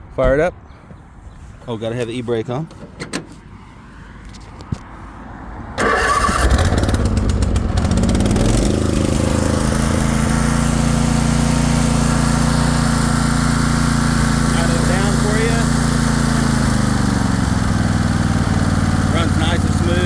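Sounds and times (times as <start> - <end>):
mower engine starting and running: 5.8 - 20.0.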